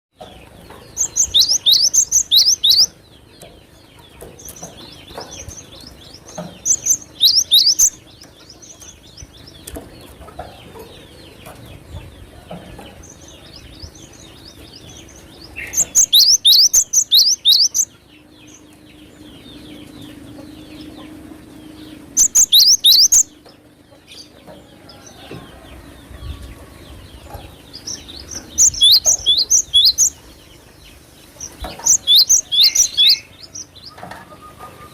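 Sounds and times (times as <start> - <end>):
soft bird chirping: 0.3 - 34.9
bird singing rapid high notes: 1.0 - 3.0, 6.6 - 8.1, 15.6 - 18.0, 22.0 - 23.4, 28.4 - 30.2, 31.5 - 33.8.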